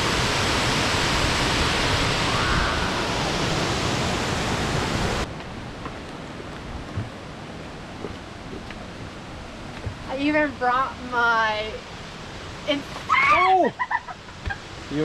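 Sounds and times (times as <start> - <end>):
waterfall rushing: 0.0 - 5.7.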